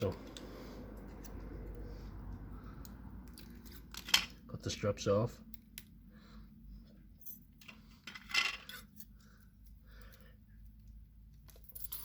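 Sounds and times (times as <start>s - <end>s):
metal parts clinking: 3.3s - 4.4s, 7.2s - 9.2s, 11.4s - 12.0s.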